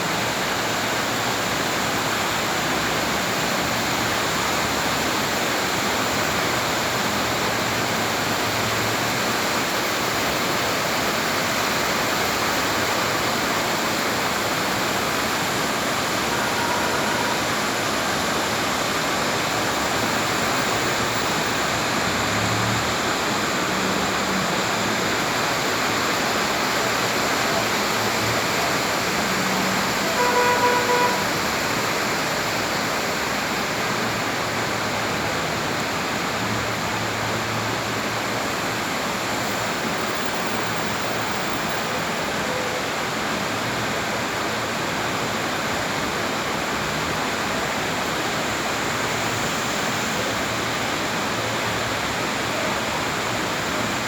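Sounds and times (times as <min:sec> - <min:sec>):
heavy rain: 0:00.0 - 0:54.0
short pitched tone: 0:16.2 - 0:17.8, 0:30.1 - 0:31.4.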